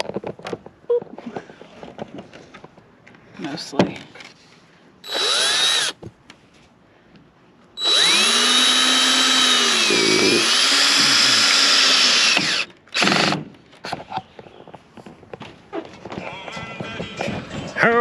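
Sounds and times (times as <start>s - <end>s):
power drill running: 5.1s - 6.0s, 7.8s - 13.4s.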